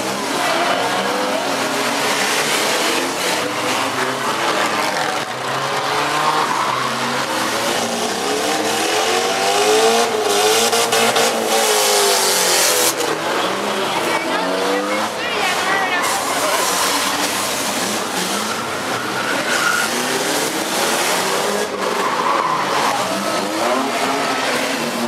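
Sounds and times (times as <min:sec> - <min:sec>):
car engines revving hard: 0:00.0 - 0:25.0
tires squealing: 0:00.0 - 0:25.0.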